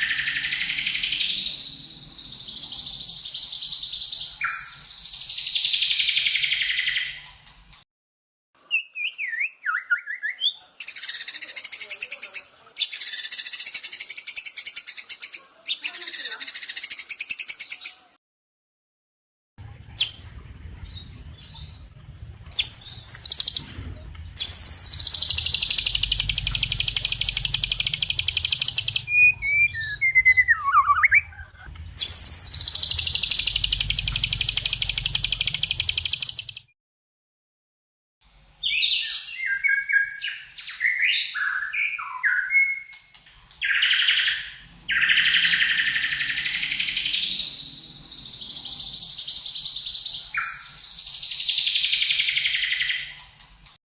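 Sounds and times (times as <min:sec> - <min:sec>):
whistled bird notes: 0:00.0 - 0:07.3, 0:08.7 - 0:11.9, 0:20.0 - 0:21.8, 0:22.5 - 0:23.7, 0:24.4 - 0:36.7, 0:38.7 - 0:43.0, 0:43.6 - 0:53.2
low hum: 0:19.6 - 0:36.3.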